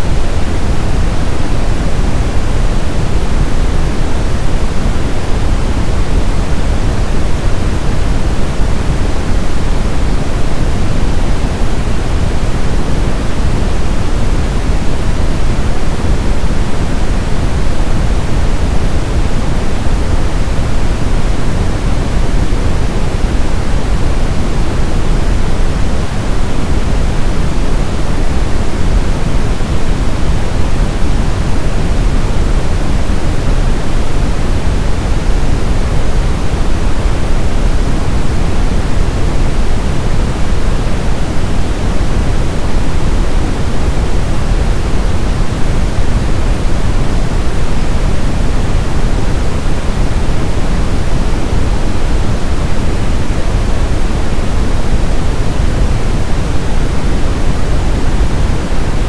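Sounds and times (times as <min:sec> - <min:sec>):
brown noise deep hiss: 0:00.0 - 0:59.0.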